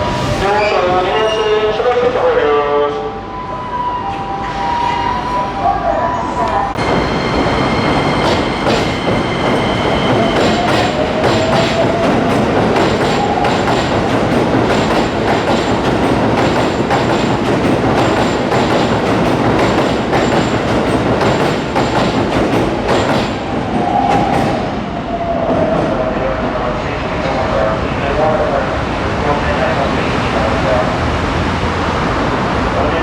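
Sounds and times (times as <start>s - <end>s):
train squealing: 0.0s - 2.0s, 3.0s - 26.1s
train wheels clattering over rail joints: 7.0s - 23.5s.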